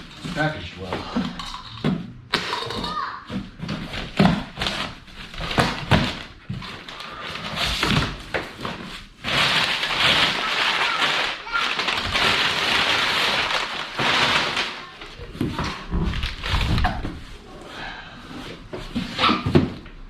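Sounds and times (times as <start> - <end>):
paper packing crumpling: 4.6 - 15.2.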